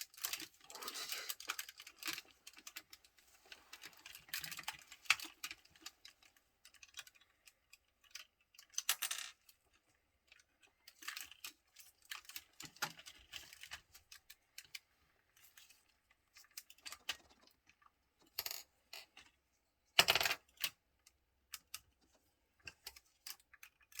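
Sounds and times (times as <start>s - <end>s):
plastic toy parts clicking: 0.0s - 3.0s, 3.8s - 9.6s.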